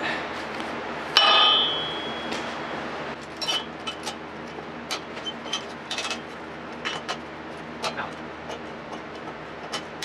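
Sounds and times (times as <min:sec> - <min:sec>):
steel clang ringing: 0:01.2 - 0:02.8.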